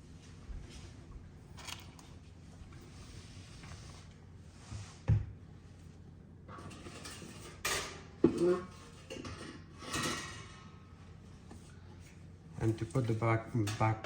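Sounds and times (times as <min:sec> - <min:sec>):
sheet metal clattering and scraping: 0:06.5 - 0:10.7.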